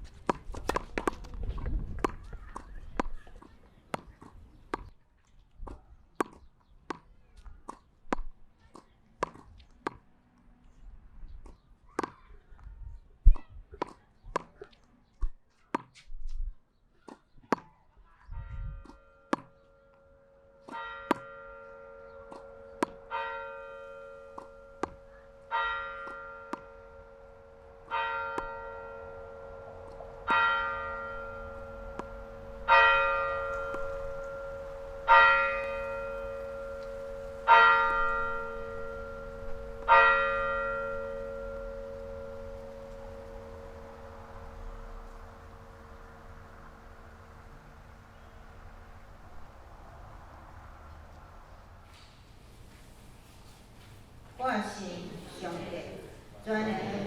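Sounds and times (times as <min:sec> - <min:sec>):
bell tolling: 0:19.0 - 0:47.1.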